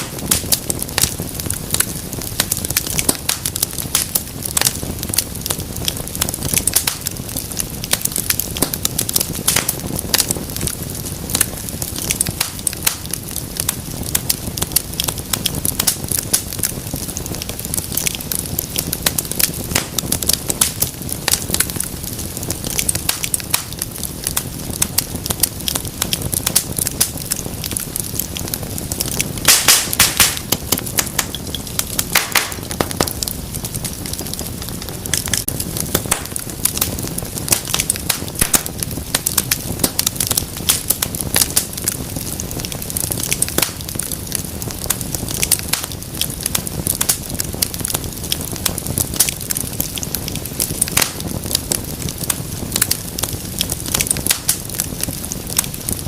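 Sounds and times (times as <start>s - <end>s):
low rumble of flames: 0.0s - 56.0s
wood fire crackling and popping: 0.0s - 56.0s.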